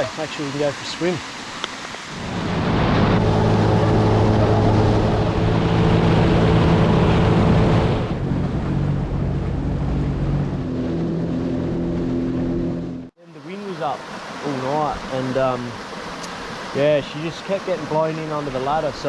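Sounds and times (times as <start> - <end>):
water and wind rushing: 0.0 - 19.0
jet ski engine running: 2.2 - 13.1.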